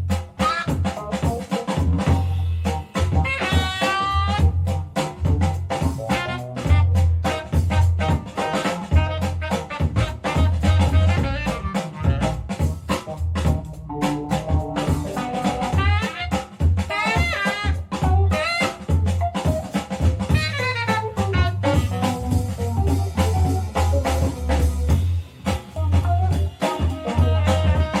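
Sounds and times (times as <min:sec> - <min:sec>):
drum kit: 0:00.0 - 0:28.0
horn melody: 0:00.1 - 0:01.1, 0:02.6 - 0:28.0
heavy pulsing bass line: 0:08.9 - 0:16.1, 0:17.8 - 0:28.0.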